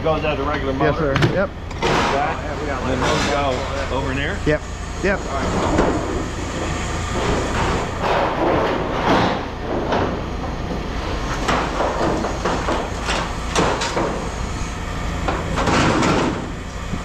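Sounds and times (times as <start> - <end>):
scrap metal clanking: 5.4 - 10.2.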